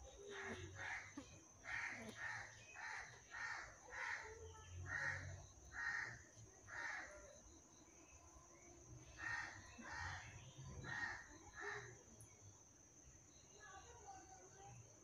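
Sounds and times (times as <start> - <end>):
crow cawing: 1.7 - 7.1.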